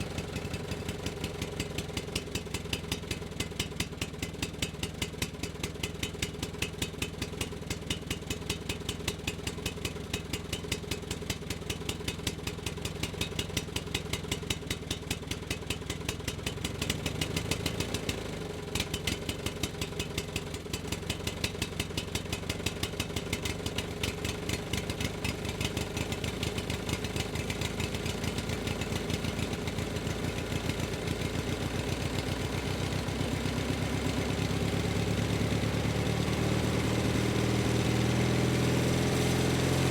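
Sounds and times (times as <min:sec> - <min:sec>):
engine idling with clattering beat: 0:00.0 - 0:37.8.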